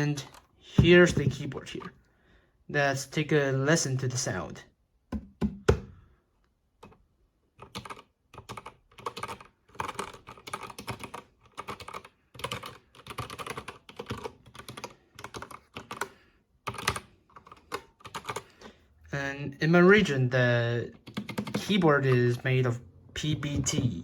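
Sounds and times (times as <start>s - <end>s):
mechanical keyboard typing: 7.6s - 16.1s, 16.7s - 18.5s, 20.9s - 22.4s.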